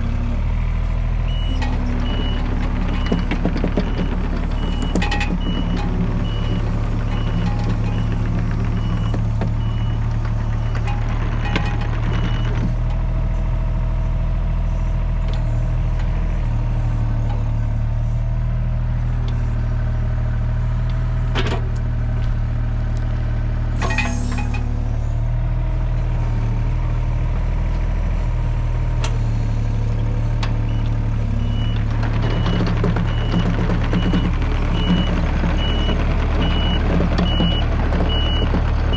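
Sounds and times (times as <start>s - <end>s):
heavy machine engine running: 0.0s - 38.9s
reversing alarm beeping: 31.4s - 38.9s.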